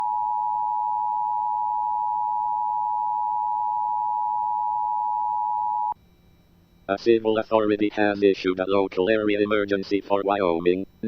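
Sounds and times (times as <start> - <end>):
steady two-tone alarm: 0.0 - 8.2.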